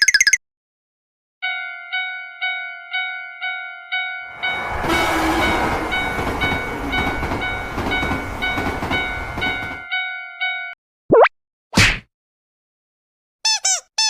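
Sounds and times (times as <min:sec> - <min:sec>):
railroad crossing bell ringing: 0:01.4 - 0:10.8
train passing: 0:04.3 - 0:09.9.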